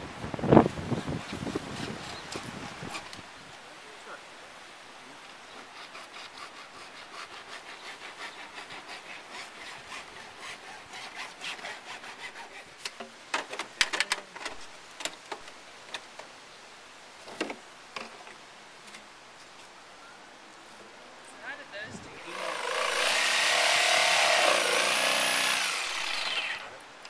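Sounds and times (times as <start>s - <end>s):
hand saw cutting plastic pipe: 5.7s - 13.0s, 22.3s - 26.8s.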